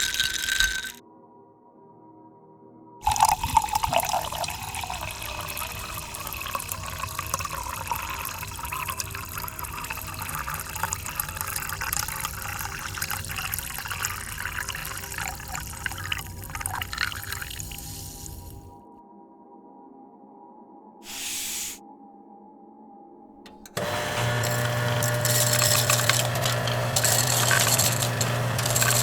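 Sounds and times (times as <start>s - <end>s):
soda fizzing: 0.0s - 1.0s, 3.0s - 18.7s, 21.1s - 21.8s, 23.6s - 29.0s
soda splashing into glass: 0.0s - 1.0s, 3.0s - 18.7s, 23.7s - 29.0s.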